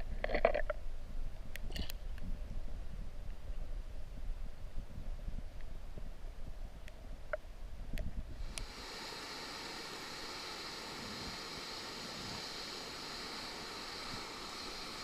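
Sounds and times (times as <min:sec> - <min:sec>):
flowing river water: 0:08.4 - 0:15.0.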